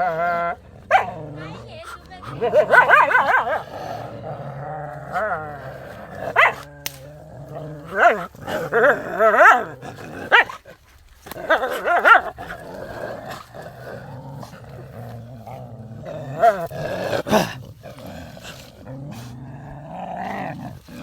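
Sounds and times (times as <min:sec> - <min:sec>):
dog growling: 0:00.0 - 0:21.0
dogs snarling and barking: 0:00.0 - 0:21.0.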